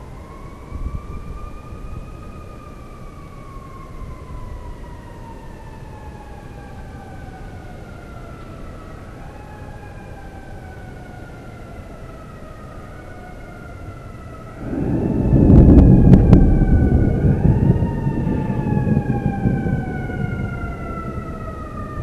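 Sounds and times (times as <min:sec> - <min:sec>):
siren wailing: 0:00.0 - 0:22.0
steady low rumble: 0:14.6 - 0:19.9.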